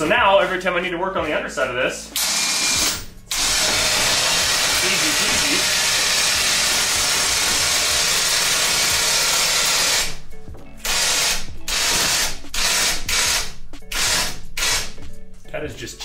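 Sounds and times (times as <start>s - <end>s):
electric winch motor and gears: 2.2s - 10.2s.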